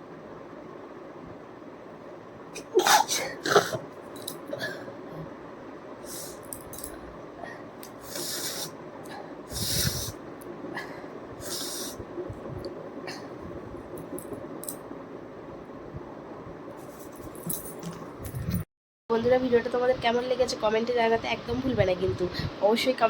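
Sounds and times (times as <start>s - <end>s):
person sneezing: 2.6s - 3.8s
breathy puffs through nose: 10.8s - 12.0s.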